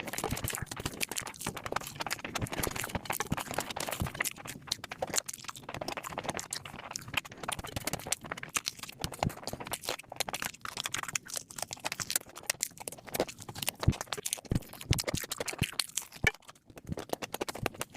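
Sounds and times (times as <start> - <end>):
wet chewing clicks and smacks: 0.0 - 17.9.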